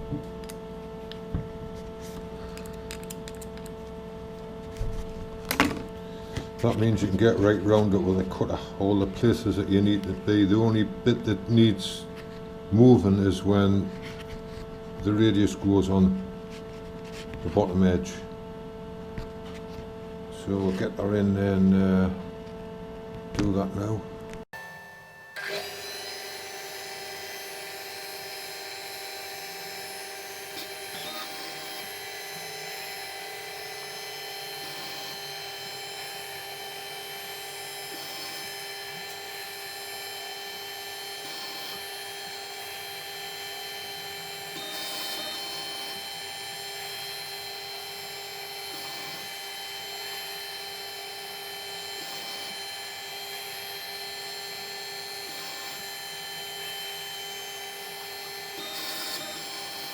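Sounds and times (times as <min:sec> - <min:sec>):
milling machine cutting metal: 0:24.6 - 0:59.9.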